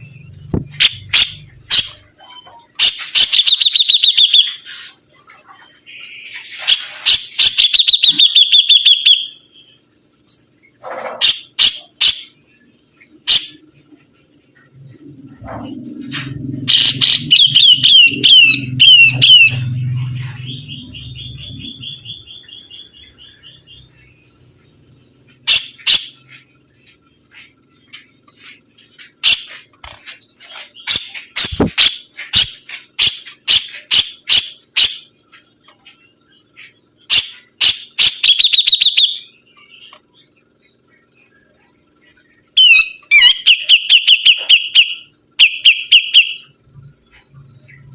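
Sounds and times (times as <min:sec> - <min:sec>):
low hum: 0:00.0 - 0:02.7, 0:12.3 - 0:45.4.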